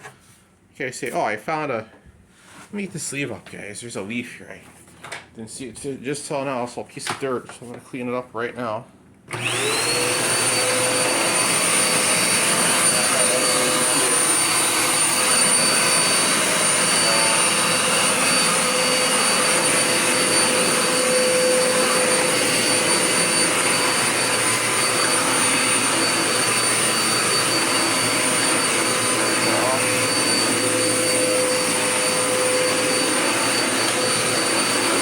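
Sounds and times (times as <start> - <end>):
vacuum cleaner motor whine: 9.3 - 35.0.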